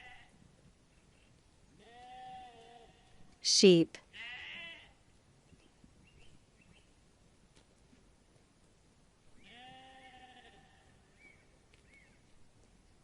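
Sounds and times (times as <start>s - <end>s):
sheep bleating: 1.8s - 3.2s, 4.2s - 5.0s, 9.4s - 11.0s.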